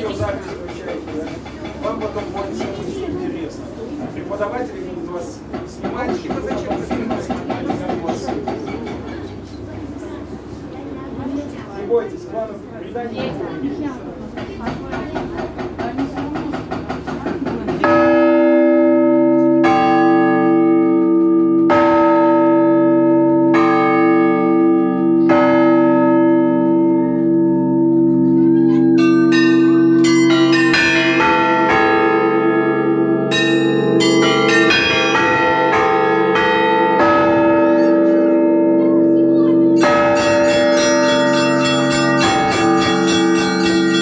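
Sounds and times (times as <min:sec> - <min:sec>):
large church bell striking: 0:16.4 - 0:44.0
small high bells ringing quickly: 0:39.8 - 0:44.0.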